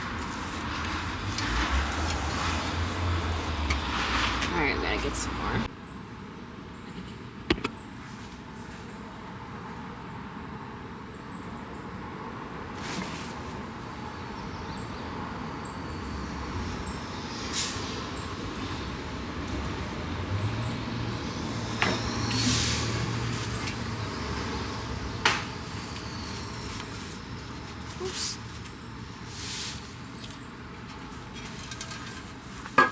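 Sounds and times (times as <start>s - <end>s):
vehicle engine hum: 0.0s - 5.8s, 14.0s - 32.7s
outdoor background noise: 0.0s - 32.9s
scrapes and knocks: 30.2s - 32.9s.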